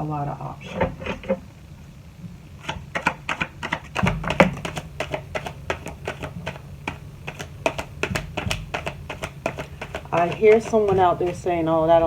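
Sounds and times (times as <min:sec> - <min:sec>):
rapid clicks and taps: 0:02.6 - 0:12.0
louder knocks: 0:02.8 - 0:12.0.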